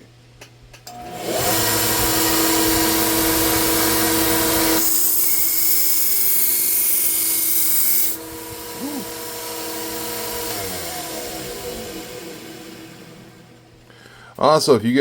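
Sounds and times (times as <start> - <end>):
belt sander running: 0.9 - 13.8
knife grinding on abrasive belt: 1.2 - 11.4.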